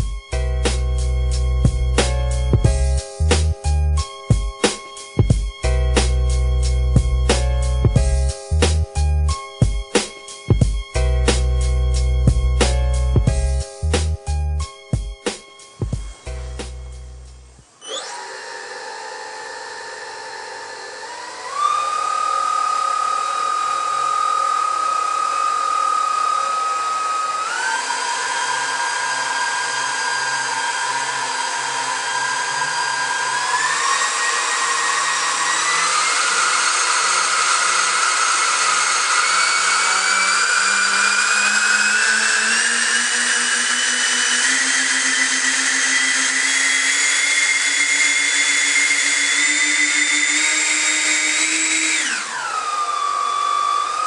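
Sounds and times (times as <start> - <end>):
electric ducted fans whining: 0.0 - 54.0.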